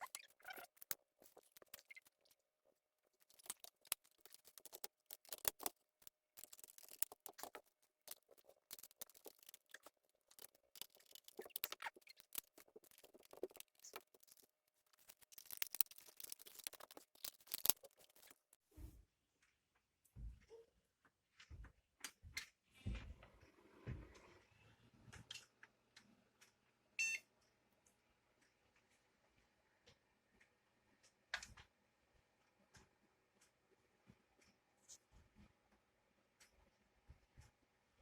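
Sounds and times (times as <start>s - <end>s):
small hard parts clicking: 0.0s - 18.6s.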